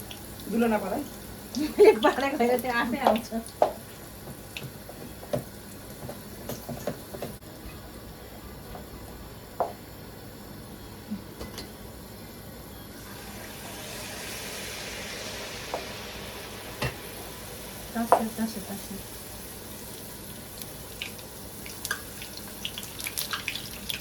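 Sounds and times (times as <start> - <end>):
dough sizzling in hot oil: 0.0 - 7.4, 12.9 - 24.0.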